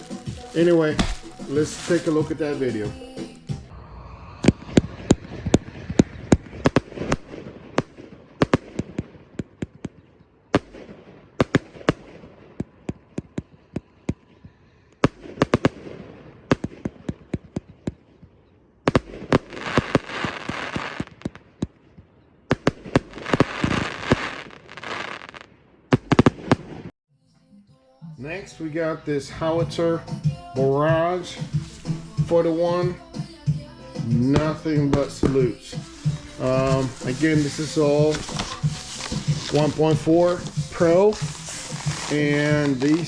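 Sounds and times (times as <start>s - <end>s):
dense fireworks crackle: 0.0s - 2.8s, 3.7s - 14.3s, 15.0s - 18.2s, 18.8s - 21.8s, 22.5s - 27.0s, 34.1s - 43.0s
fireworks shots and bursts: 4.4s - 14.4s, 15.0s - 26.9s, 31.3s - 43.0s.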